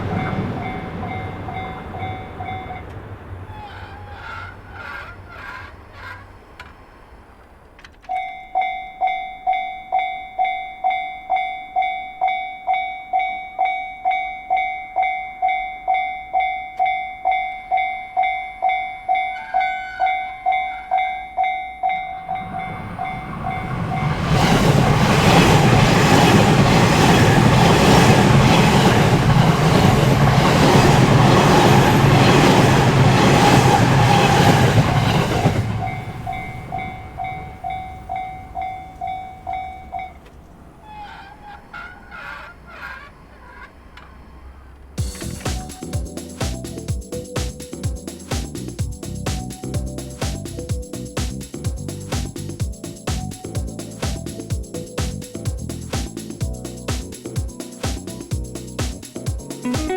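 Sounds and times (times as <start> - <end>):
level-crossing warning bell ringing: 0.0 - 3.1, 8.0 - 41.0
train wheels clicking over rail joints: 0.0 - 8.7, 21.4 - 59.7.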